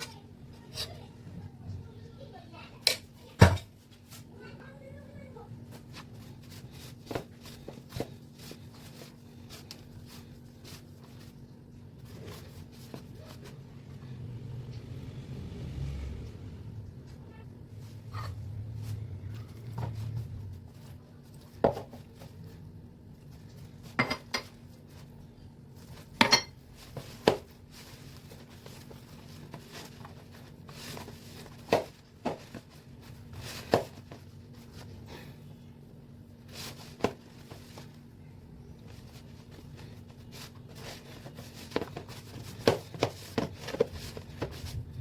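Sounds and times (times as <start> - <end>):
utensils and dishes clinking: 26.2 - 26.6.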